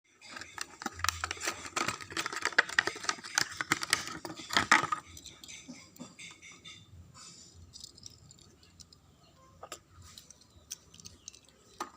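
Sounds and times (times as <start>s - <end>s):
packaging clicking and crackling: 0.2s - 5.5s, 10.1s - 11.9s.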